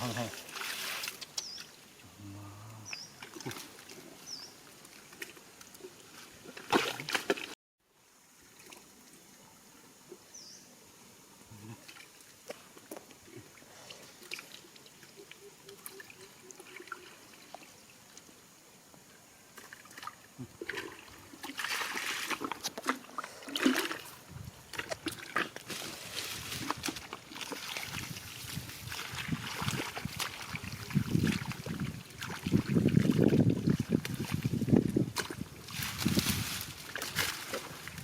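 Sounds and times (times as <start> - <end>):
water sloshing from wading: 19.6 - 38.0.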